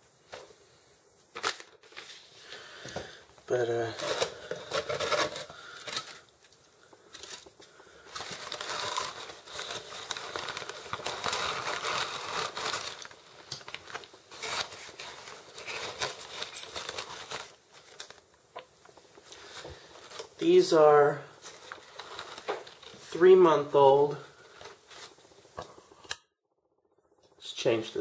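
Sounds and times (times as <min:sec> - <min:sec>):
packaging crinkling and tearing: 0:01.3 - 0:02.2, 0:03.6 - 0:20.4, 0:21.4 - 0:23.2.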